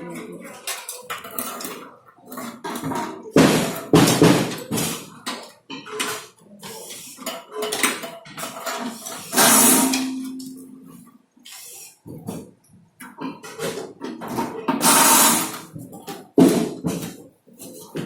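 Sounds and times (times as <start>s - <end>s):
metal parts clattering: 7.0s - 10.4s.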